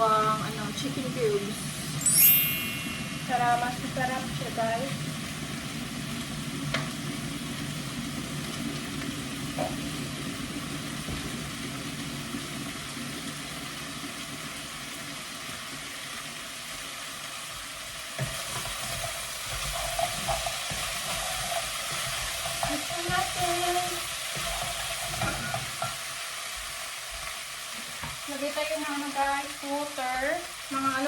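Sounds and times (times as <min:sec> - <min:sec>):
food sizzling in a pan: 0:00.0 - 0:31.0.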